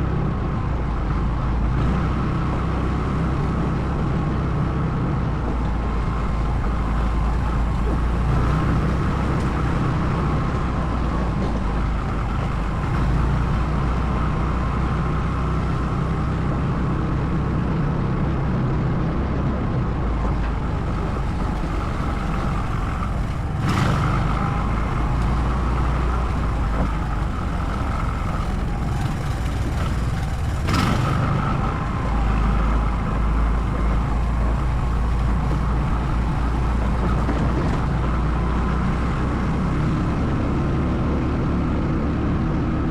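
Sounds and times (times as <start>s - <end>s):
atv engine running: 0.0s - 42.9s.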